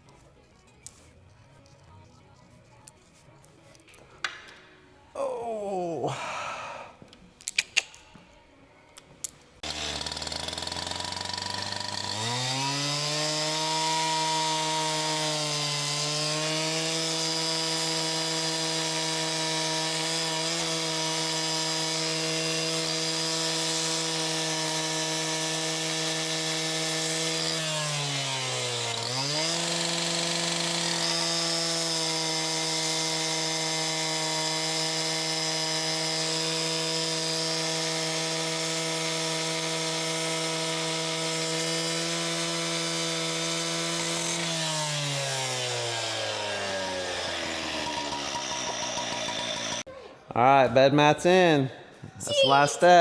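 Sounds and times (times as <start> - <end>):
electric chop saw whining: 9.6 - 49.9.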